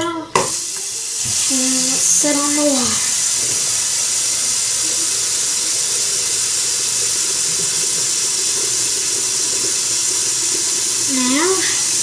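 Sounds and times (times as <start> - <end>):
tap water running: 0.0 - 12.0.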